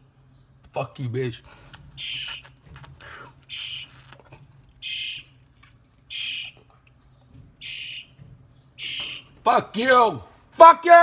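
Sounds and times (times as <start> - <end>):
bird calling: 1.9 - 4.2, 4.8 - 5.4, 6.1 - 9.4.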